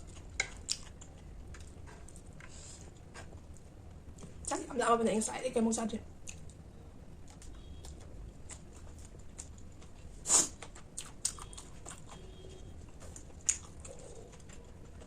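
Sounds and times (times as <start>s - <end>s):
person chewing: 0.0s - 4.3s, 7.3s - 15.0s.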